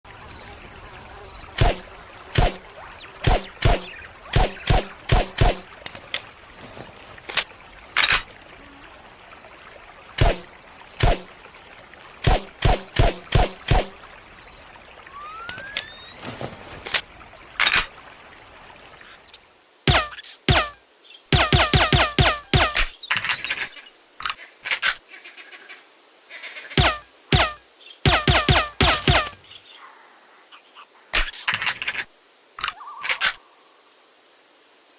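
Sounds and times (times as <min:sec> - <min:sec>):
steady high hiss: 0:00.1 - 0:22.2.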